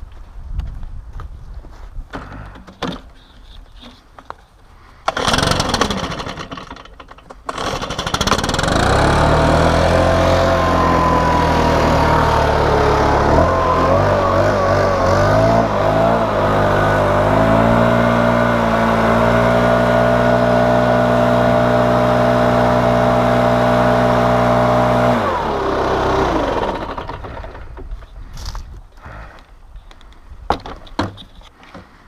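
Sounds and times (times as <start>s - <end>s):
leaf blower engine running: 5.1s - 27.8s.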